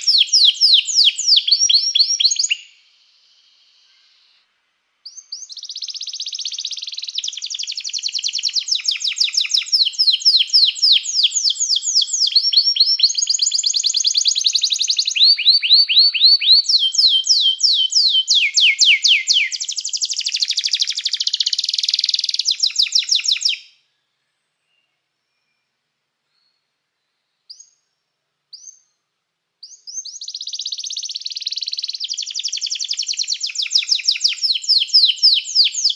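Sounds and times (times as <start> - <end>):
canary singing rapid trills: 0.0 - 2.7, 5.1 - 23.7, 29.7 - 35.9.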